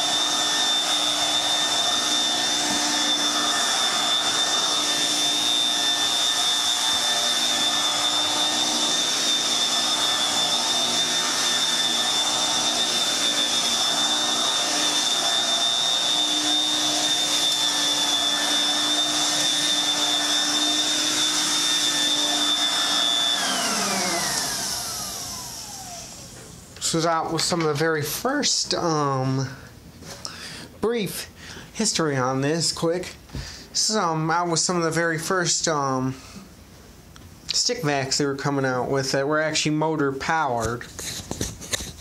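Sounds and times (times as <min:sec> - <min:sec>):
stick vacuum running: 0:00.0 - 0:26.4
vacuum motor winding down: 0:00.0 - 0:26.4.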